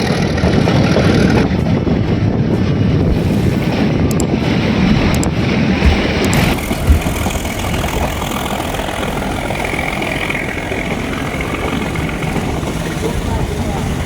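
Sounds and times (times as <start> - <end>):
train rumble and hiss: 0.0 - 14.0
wind buffeting microphone: 0.0 - 14.0
low thumps: 4.5 - 8.8.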